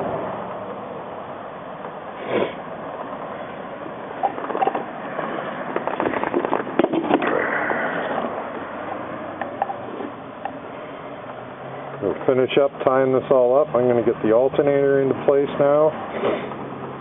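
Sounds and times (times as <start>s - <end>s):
brief scrape: 2.2s - 2.6s, 16.1s - 16.5s
parts and tools clicking and rattling: 4.2s - 7.4s.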